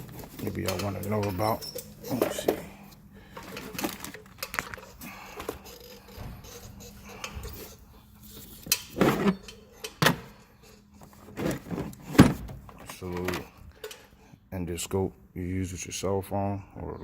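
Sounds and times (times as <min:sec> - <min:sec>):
tools clinking in metal drawer: 0:00.0 - 0:02.7
tools rattling: 0:00.0 - 0:14.0.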